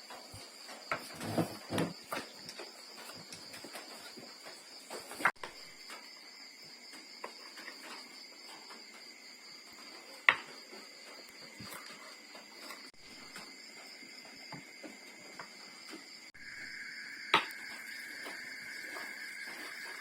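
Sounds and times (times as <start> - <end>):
lower insect tone: 0.0 - 20.0
high-pitched insect chirring: 16.4 - 20.0.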